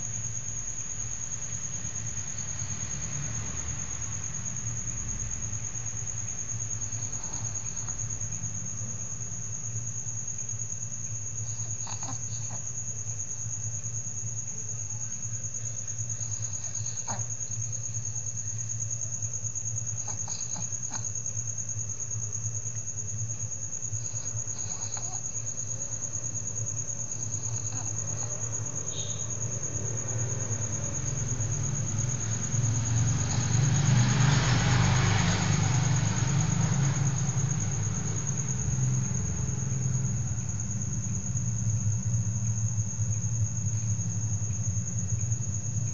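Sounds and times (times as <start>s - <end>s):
soft snoring: 6.8s - 8.2s, 11.4s - 12.9s, 15.6s - 18.8s, 19.9s - 21.2s, 23.9s - 29.2s.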